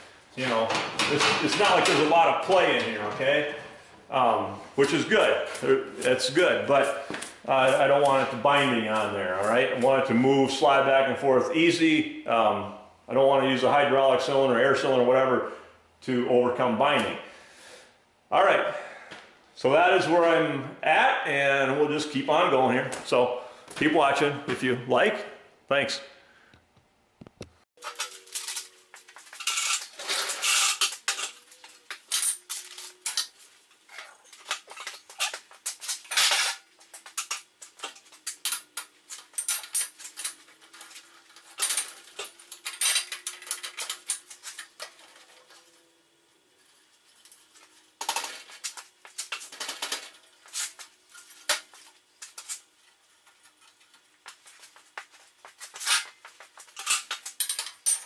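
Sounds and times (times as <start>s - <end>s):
steel parts and tools clanking: 27.8s - 45.9s, 46.5s - 58.0s.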